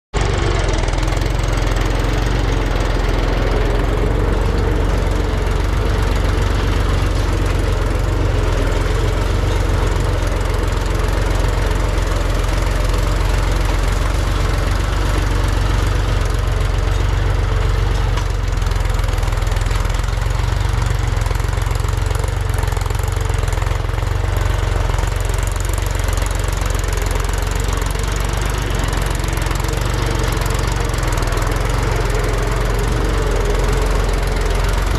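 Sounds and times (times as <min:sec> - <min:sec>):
diesel engine rumbling: 0:00.1 - 0:34.9.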